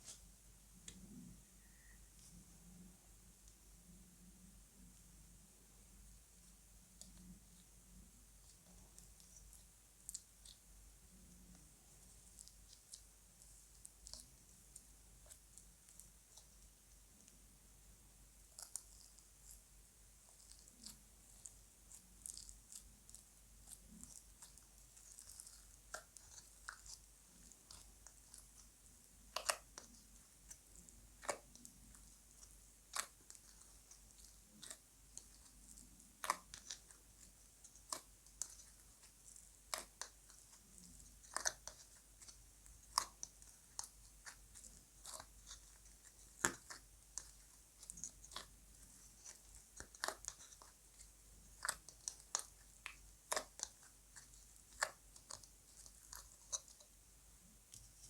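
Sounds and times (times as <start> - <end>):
slime clicking and popping: 29.3 - 48.5.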